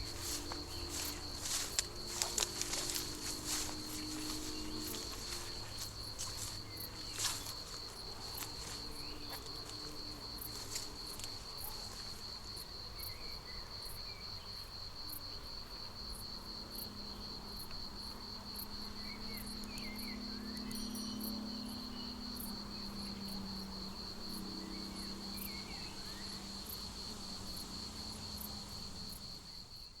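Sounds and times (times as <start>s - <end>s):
bee buzzing: 0.0s - 11.3s
cricket trilling: 0.0s - 30.0s.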